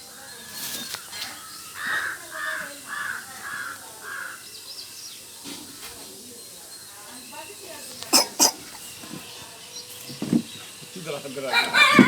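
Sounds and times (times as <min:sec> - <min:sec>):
animal calling: 0:11.5 - 0:12.0.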